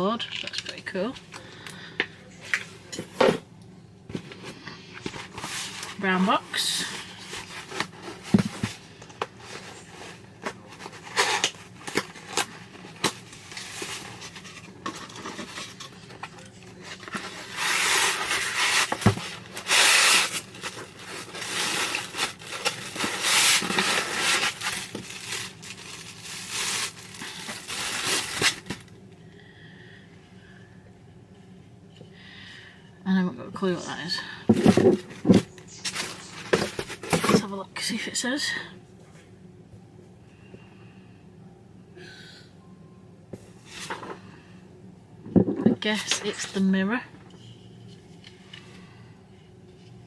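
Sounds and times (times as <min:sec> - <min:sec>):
packaging rustling and tearing: 0:06.8 - 0:28.9, 0:34.6 - 0:37.4.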